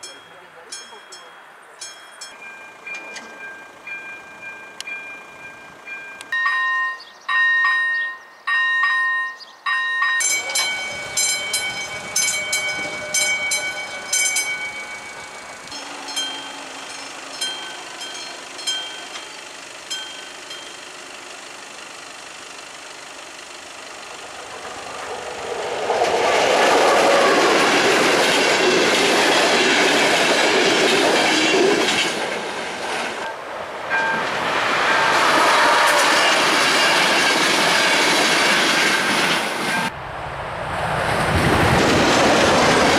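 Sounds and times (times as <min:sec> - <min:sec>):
level crossing warning bells: 0:00.0 - 0:24.3, 0:33.2 - 0:39.9
train passing: 0:00.0 - 0:42.9
train wheels clattering on rails: 0:10.0 - 0:20.9, 0:24.0 - 0:39.9.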